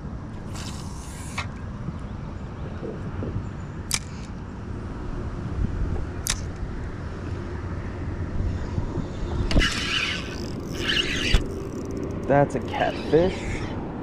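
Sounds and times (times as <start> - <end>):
sharp click: 3.9 - 4.4, 6.2 - 6.6.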